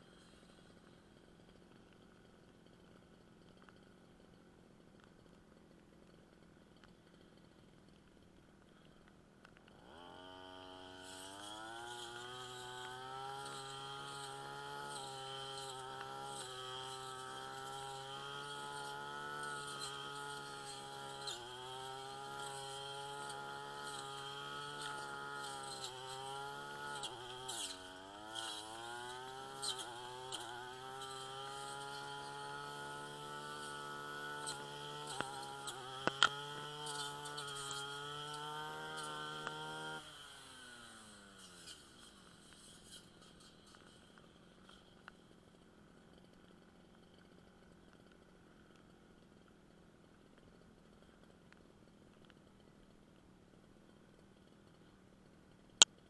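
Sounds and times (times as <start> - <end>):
brush cutter engine revving: 9.0 - 48.7.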